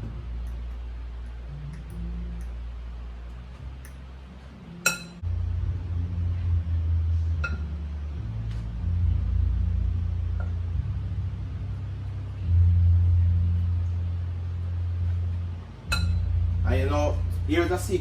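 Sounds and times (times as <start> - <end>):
low rumble: 0.0 - 18.0.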